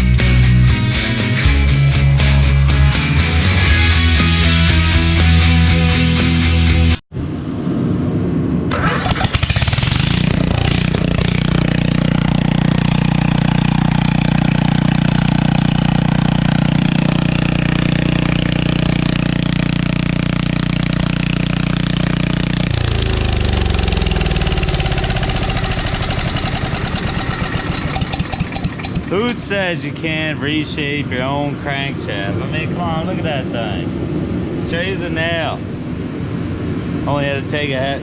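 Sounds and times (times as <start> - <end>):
mini bike engine running: 8.7 - 29.6.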